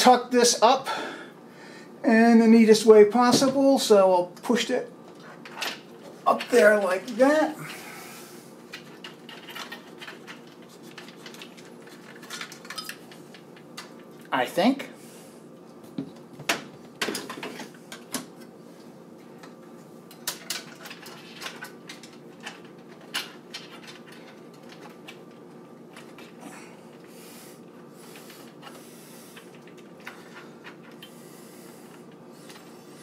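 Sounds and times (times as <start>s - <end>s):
faint steady hum: 0.0s - 33.0s
plastic parts clicking and rustling: 8.7s - 14.0s, 20.1s - 27.1s.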